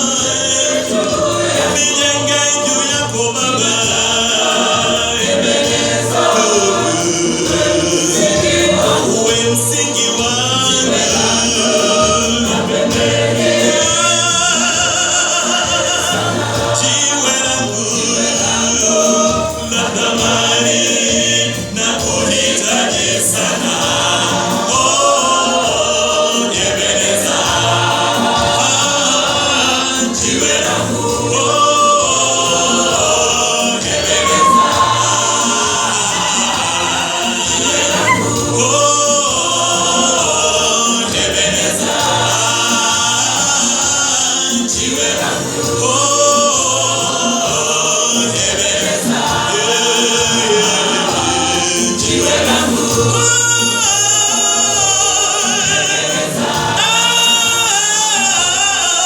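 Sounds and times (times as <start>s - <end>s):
choir singing gospel: 0.0s - 59.0s
repeating bass part: 33.9s - 36.3s, 37.8s - 39.0s.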